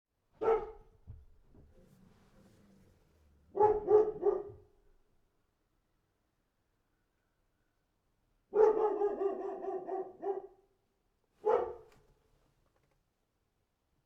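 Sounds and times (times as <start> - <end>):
dog barking: 0.4 - 1.0, 3.5 - 4.8, 8.5 - 10.6, 11.4 - 12.0.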